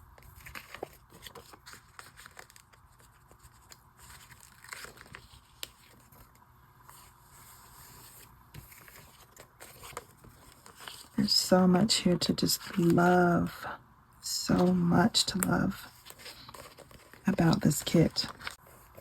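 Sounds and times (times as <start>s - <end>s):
paper stickers peeling and rustling: 0.2s - 7.1s, 7.8s - 11.2s, 14.6s - 19.0s.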